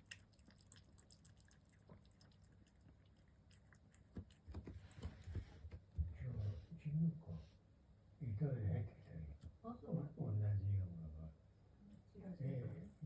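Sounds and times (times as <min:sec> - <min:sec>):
cat lapping water: 0:00.0 - 0:05.6.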